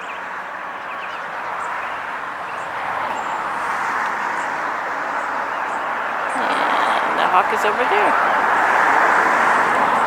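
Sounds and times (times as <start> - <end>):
road traffic hiss: 0.0 - 10.0
small birds chirping: 5.6 - 8.4.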